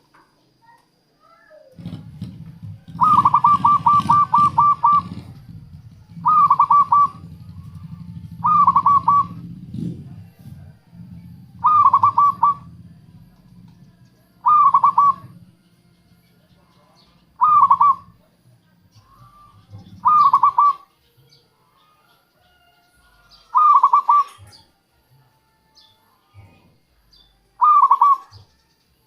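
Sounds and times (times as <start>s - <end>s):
dove cooing: 1.3s - 20.9s, 23.1s - 24.7s, 27.6s - 28.5s
low hum: 1.8s - 20.6s.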